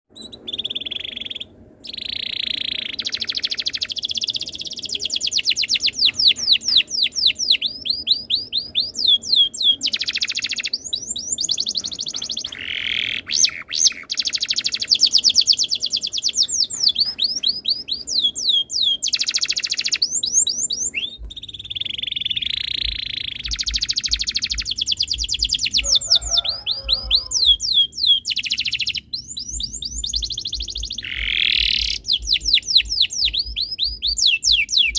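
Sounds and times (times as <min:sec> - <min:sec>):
canary singing trills: 0:00.1 - 0:34.9
faint low pulsing: 0:20.0 - 0:25.9, 0:29.2 - 0:34.2.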